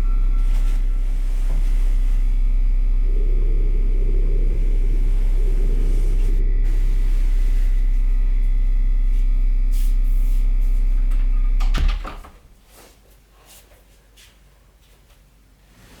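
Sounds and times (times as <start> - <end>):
faint high tone: 0.0 - 10.7
loud low rumbling drone: 0.0 - 12.4.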